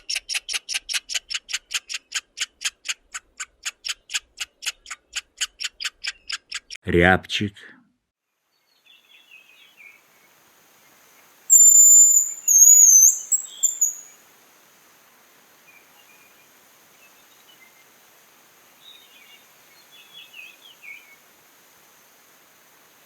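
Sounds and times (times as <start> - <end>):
faint bird chirps: 8.5 - 14.2
high whistled bird song: 11.5 - 14.2.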